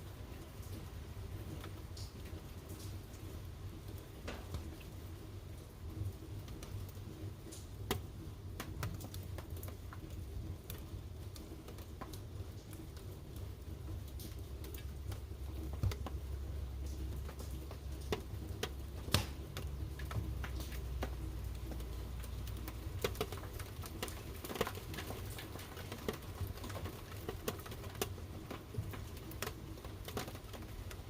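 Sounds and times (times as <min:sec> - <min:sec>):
wood fire crackling: 0:00.0 - 0:31.0
sharp pops and snaps of fire: 0:06.5 - 0:13.5, 0:14.1 - 0:31.0.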